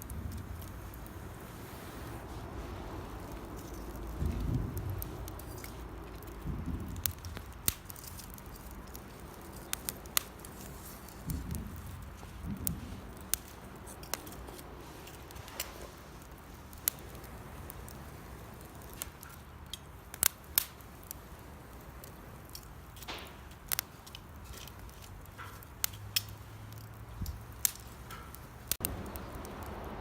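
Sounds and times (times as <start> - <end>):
campfire crackling: 0.0 - 30.0
faint hiss of flames: 0.0 - 30.0
wood pops and snaps: 22.1 - 29.3.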